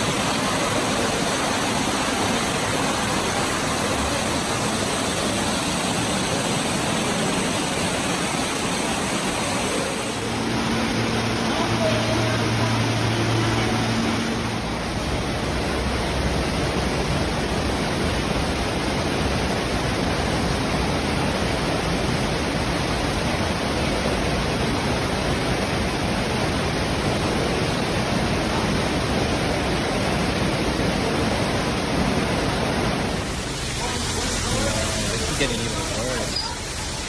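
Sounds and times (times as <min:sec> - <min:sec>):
heavy rain hiss: 0:00.0 - 0:37.0
rushing floodwater: 0:00.0 - 0:37.0
low hum: 0:01.9 - 0:18.4.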